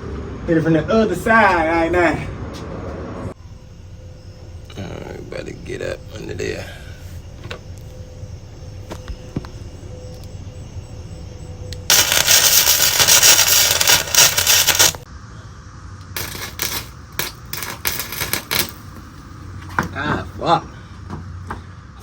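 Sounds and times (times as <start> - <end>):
welding arc crackling: 11.9 - 15.1, 16.1 - 18.9.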